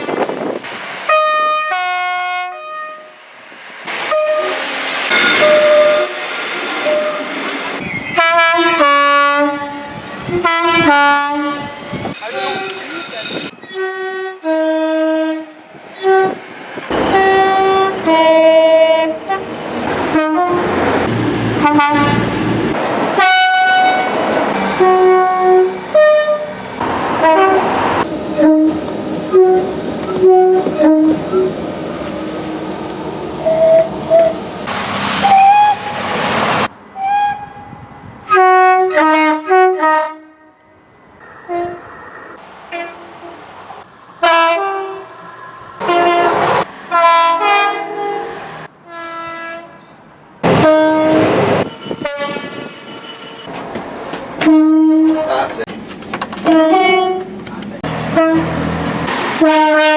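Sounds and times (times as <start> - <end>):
trains running on rails: 0.0 - 59.9
train horn blasts: 1.1 - 3.2, 4.1 - 6.2, 8.2 - 11.8, 13.8 - 19.5, 20.1 - 20.7, 21.6 - 22.3, 23.2 - 24.1, 24.7 - 26.5, 27.2 - 31.5, 37.0 - 40.8, 41.5 - 41.8, 42.7 - 43.4, 44.2 - 45.1, 45.8 - 49.8, 50.4 - 53.5, 54.4 - 55.6, 56.4 - 57.3, 58.1 - 59.9.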